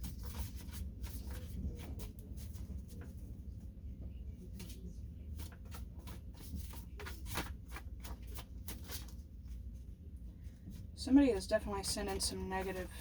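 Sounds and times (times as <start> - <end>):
low steady hum: 0.0 - 13.0
cards being shuffled: 5.4 - 9.2.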